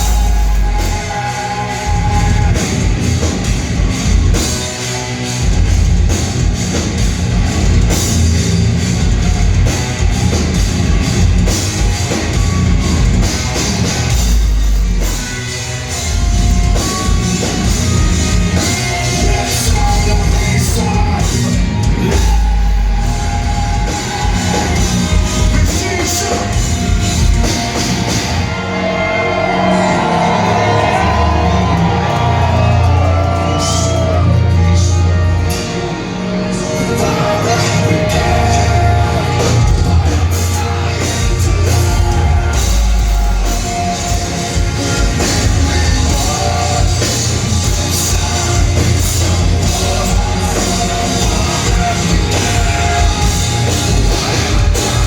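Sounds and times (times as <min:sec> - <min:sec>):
person singing: 0:00.0 - 0:03.4, 0:16.1 - 0:55.0
bass guitar: 0:00.0 - 0:55.0
distorted guitars: 0:00.0 - 0:55.0
drum kit: 0:00.0 - 0:55.0.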